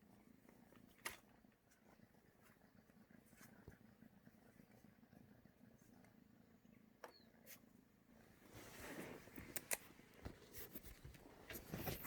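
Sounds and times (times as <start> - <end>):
faint rustling: 7.4 - 12.0.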